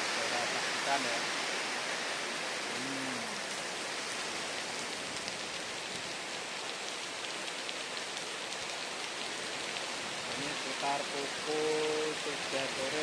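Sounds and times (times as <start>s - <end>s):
heavy rain hiss: 0.0s - 13.0s
raindrops ticking: 2.6s - 13.0s.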